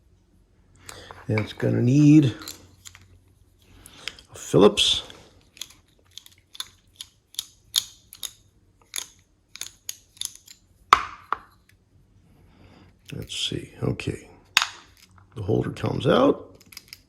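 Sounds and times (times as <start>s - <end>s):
screwdriver clicking on padlock: 5.5s - 10.6s.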